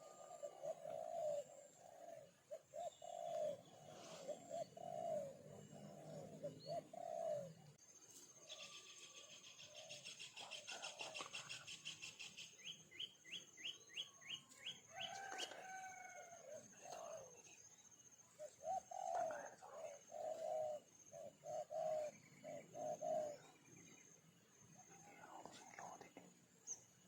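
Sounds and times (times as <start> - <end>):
dove cooing: 0.0 - 7.8, 9.5 - 12.1, 14.9 - 24.0, 24.8 - 26.3.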